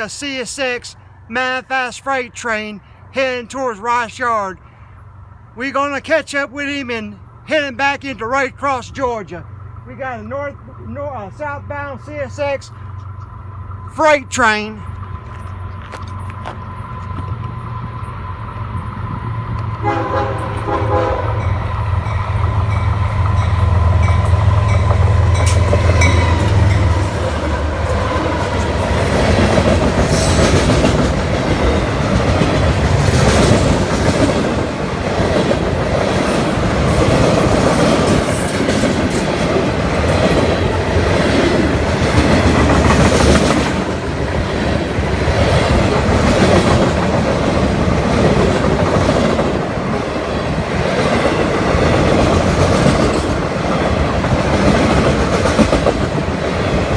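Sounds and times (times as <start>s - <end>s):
freight train rumbling past: 0.0s - 56.9s
wheels clacking over rail joints: 14.8s - 56.9s.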